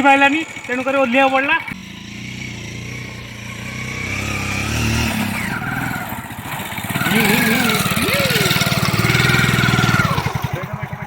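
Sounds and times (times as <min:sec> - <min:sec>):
motorcycle engine running under load: 0:00.0 - 0:11.0.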